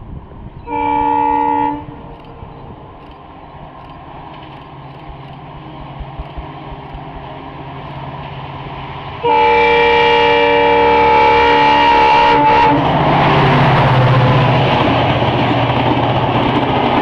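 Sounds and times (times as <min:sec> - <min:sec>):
diesel locomotive engine hum: 0:00.0 - 0:17.0
locomotive air horn blast: 0:00.6 - 0:02.8, 0:09.2 - 0:13.0.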